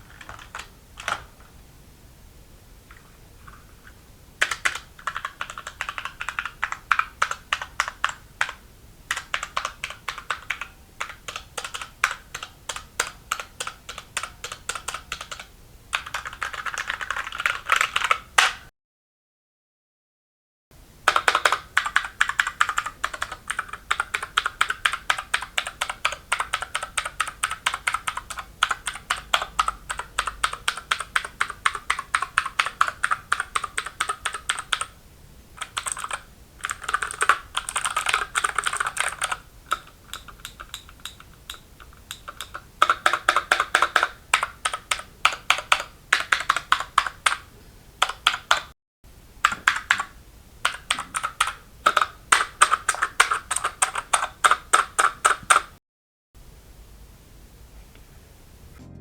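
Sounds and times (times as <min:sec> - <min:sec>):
clicky keyboard typing: 0:00.0 - 0:01.5, 0:04.4 - 0:18.6, 0:21.1 - 0:34.9, 0:35.6 - 0:48.7, 0:49.4 - 0:55.8.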